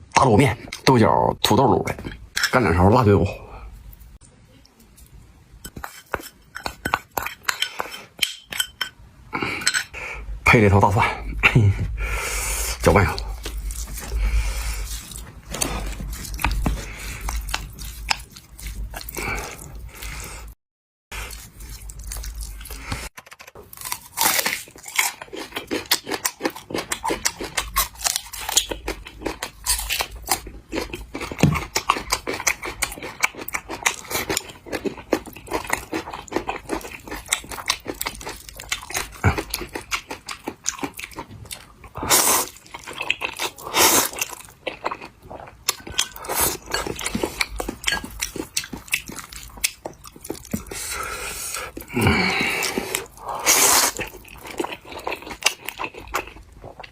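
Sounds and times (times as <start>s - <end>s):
wet chewing and mouth smacks: 13.2s - 19.8s, 24.6s - 56.9s.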